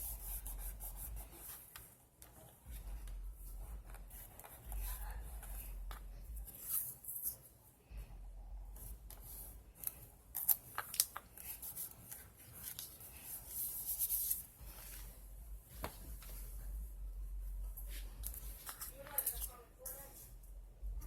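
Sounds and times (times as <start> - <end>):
low steady hum: 0.0 - 21.0
paper rustling: 9.2 - 16.6.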